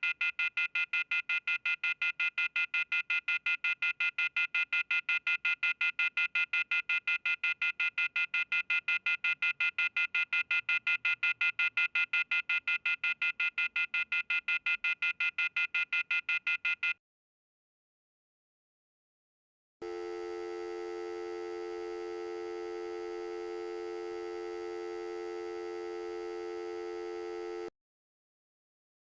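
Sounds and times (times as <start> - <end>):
rapid two-tone electronic beeps: 0.0 - 17.0.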